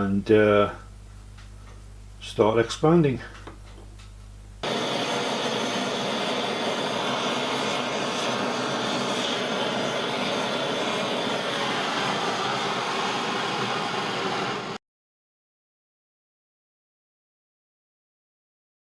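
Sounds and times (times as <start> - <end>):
blowtorch flame roaring: 4.6 - 14.8.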